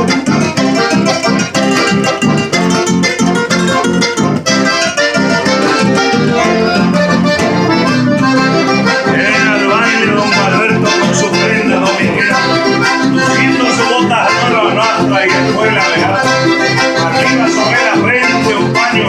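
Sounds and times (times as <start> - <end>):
accordion playing lively tune: 0.0 - 19.0
rhythmic accompaniment: 0.0 - 19.0
person vocalizing: 5.6 - 19.0.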